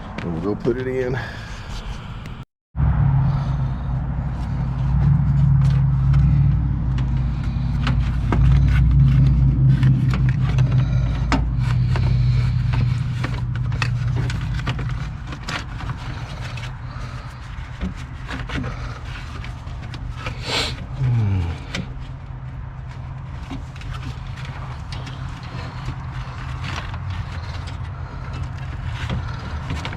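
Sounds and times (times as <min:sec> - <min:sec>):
steady low hum: 0:01.3 - 0:29.9
plastic fan assembly being handled: 0:07.7 - 0:21.0, 0:21.7 - 0:29.9.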